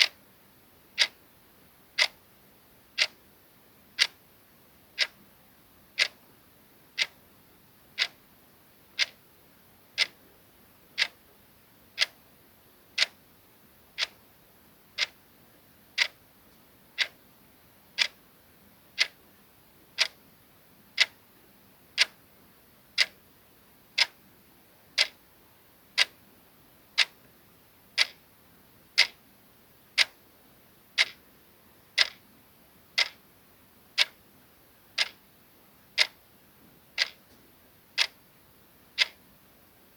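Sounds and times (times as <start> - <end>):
clock ticking: 1.0 - 1.2, 2.0 - 2.2, 3.0 - 3.2, 4.0 - 4.2, 5.0 - 5.2, 6.0 - 6.2, 7.0 - 7.2, 8.0 - 8.2, 9.0 - 9.2, 10.0 - 10.2, 11.0 - 11.2, 12.0 - 12.2, 13.0 - 13.2, 14.0 - 14.2, 15.0 - 15.2, 16.0 - 16.2, 17.0 - 17.2, 18.0 - 18.2, 19.0 - 19.2, 20.0 - 20.2, 21.0 - 21.2, 22.0 - 22.2, 23.0 - 23.2, 24.0 - 24.2, 25.0 - 25.2, 26.0 - 26.2, 27.0 - 27.2, 28.0 - 28.2, 29.0 - 29.2, 30.0 - 30.2, 31.0 - 31.2, 32.0 - 32.2, 33.0 - 33.2, 34.0 - 34.2, 35.0 - 35.2, 36.0 - 36.2, 37.0 - 37.3, 38.0 - 38.2, 39.0 - 39.2.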